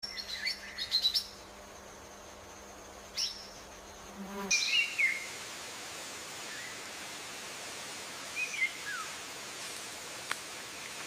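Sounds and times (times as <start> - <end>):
small bird chirping: 0.0 - 1.4.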